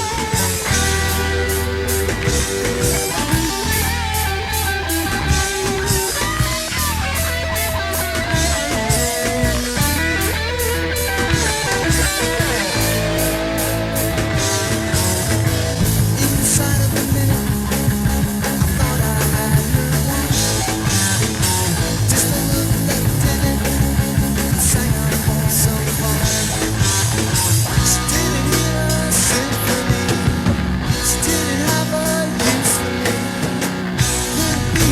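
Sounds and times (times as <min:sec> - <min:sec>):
rock band playing: 0:00.0 - 0:34.9.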